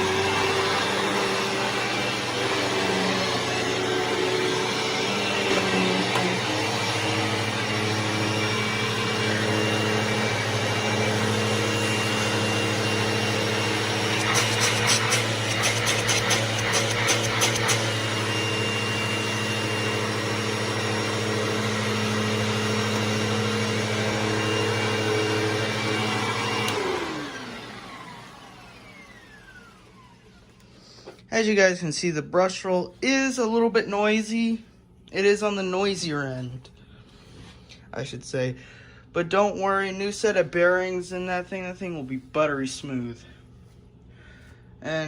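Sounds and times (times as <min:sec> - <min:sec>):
vacuum winding down: 0:00.0 - 0:30.6
upright vacuum running: 0:00.0 - 0:31.2.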